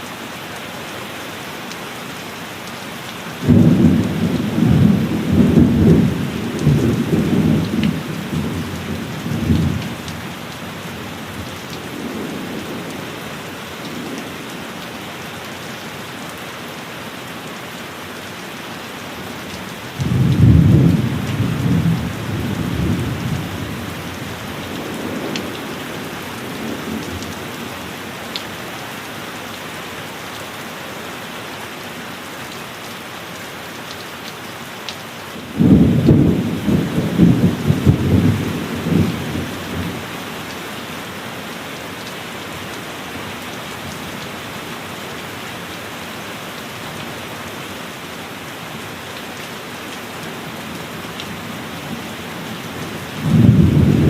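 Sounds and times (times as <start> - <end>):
heavy rain: 0.0 - 54.0
thunder rolling: 53.2 - 54.0.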